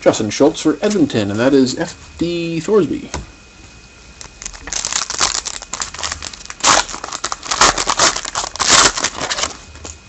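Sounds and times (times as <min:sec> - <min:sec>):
foil wrapper crinkling and tearing: 0:04.2 - 0:10.0.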